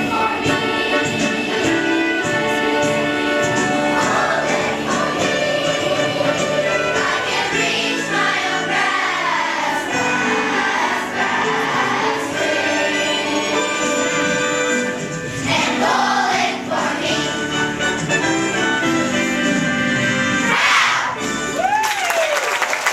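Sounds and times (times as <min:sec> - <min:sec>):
vocal group singing in harmony: 0:00.0 - 0:17.6.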